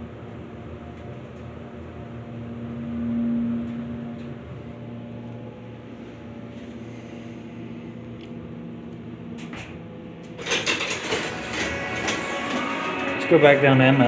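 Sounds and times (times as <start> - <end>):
hydraulic elevator humming: 0.0 - 14.0.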